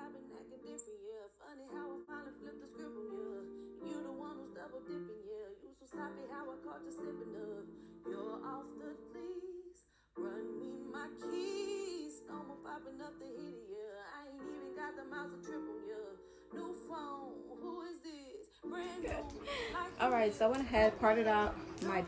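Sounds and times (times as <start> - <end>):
song with singing voice: 0.0 - 22.0.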